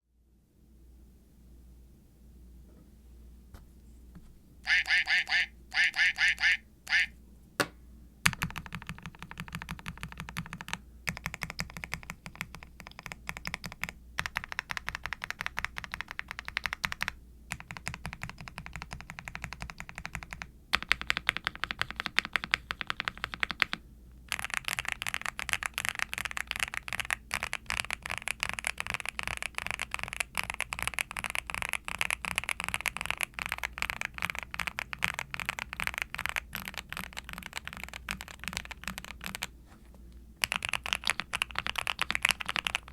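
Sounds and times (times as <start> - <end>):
mechanical keyboard typing: 8.2 - 39.6, 40.4 - 42.9.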